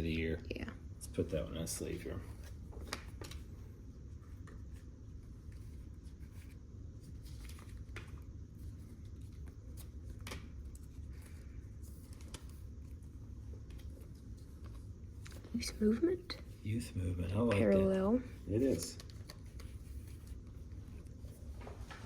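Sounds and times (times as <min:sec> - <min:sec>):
steady low hum: 0:00.0 - 0:22.0
cards rustling and clicking: 0:02.3 - 0:03.6, 0:04.3 - 0:16.6, 0:18.5 - 0:22.0.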